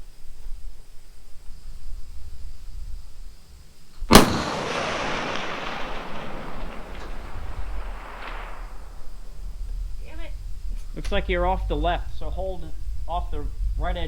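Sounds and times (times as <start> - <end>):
rifle shot: 4.1 - 9.7
rolling echo of gunshot: 4.1 - 10.0.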